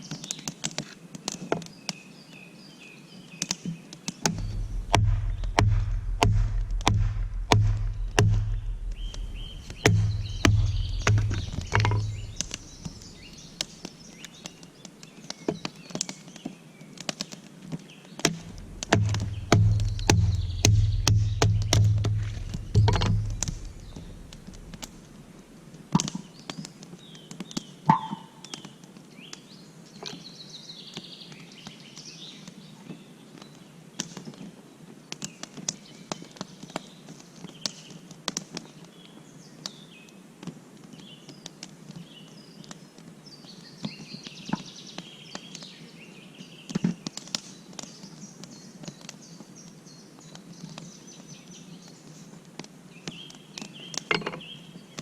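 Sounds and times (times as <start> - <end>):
small birds chirping: 0.0 - 34.5, 40.9 - 55.0
sharp clicks and snaps: 3.4 - 14.9, 18.2 - 25.2
loud knock: 4.3 - 13.1, 18.3 - 25.2.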